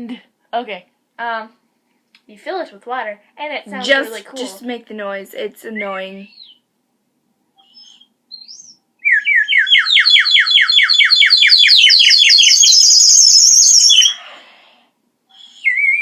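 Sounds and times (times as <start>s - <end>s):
ceramic bird whistle trilling: 6.3s - 6.6s, 7.6s - 14.2s, 15.4s - 16.0s.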